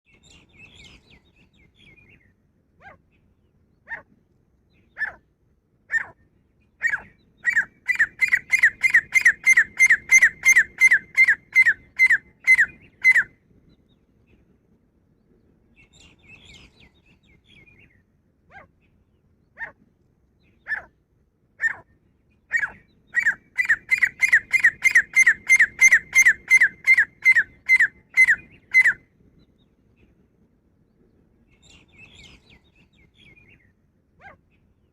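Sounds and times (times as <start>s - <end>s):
francolin calling: 6.8s - 13.3s, 22.6s - 29.0s
faint bird twittering: 30.8s - 34.7s.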